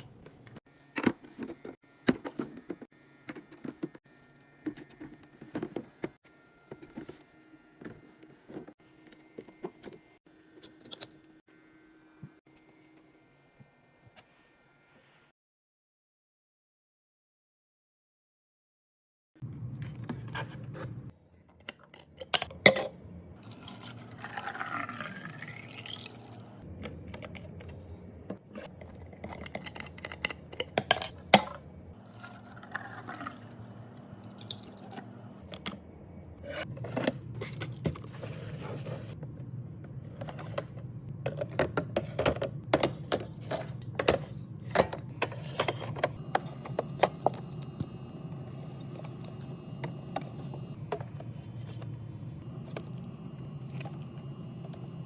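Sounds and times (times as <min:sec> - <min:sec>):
liquid pouring into container: 0:23.4 - 0:26.6, 0:32.0 - 0:35.1
containers clicking and knocking: 0:28.4 - 0:31.6, 0:40.2 - 0:47.6.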